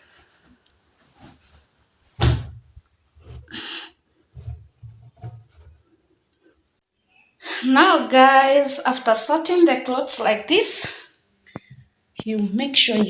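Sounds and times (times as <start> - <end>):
fabric rustling: 0.0 - 3.5
sharp knock: 2.2 - 2.6.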